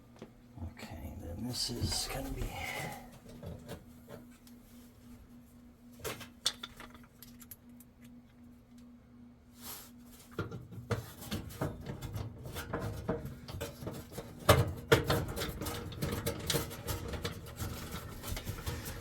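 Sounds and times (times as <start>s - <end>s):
faint steady hum: 0.0s - 10.4s.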